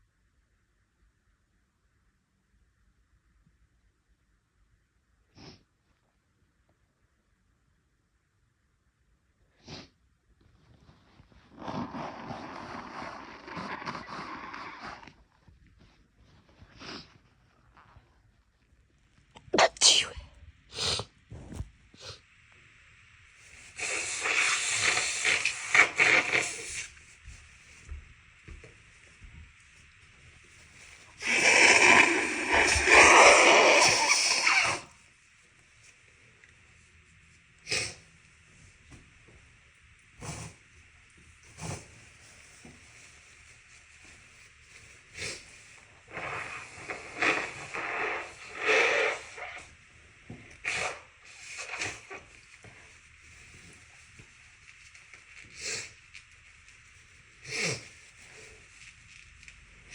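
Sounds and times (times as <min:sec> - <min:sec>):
person blowing nose: 0:19.6 - 0:21.1, 0:23.7 - 0:27.0, 0:31.2 - 0:35.0, 0:37.6 - 0:38.0, 0:40.2 - 0:40.6, 0:41.5 - 0:42.0, 0:45.1 - 0:49.7, 0:50.6 - 0:52.8, 0:57.4 - 0:58.6
sharp breaths through nose: 0:40.2 - 0:40.6.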